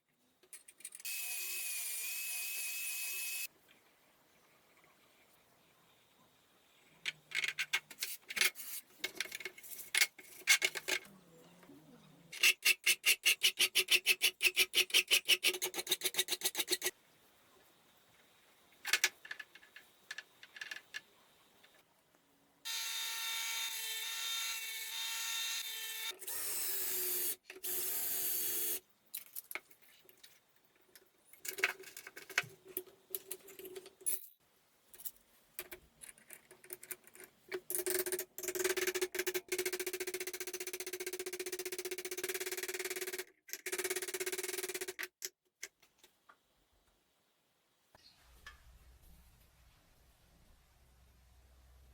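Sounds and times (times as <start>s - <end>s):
padlock parts clicking and rattling: 35.0s - 40.7s.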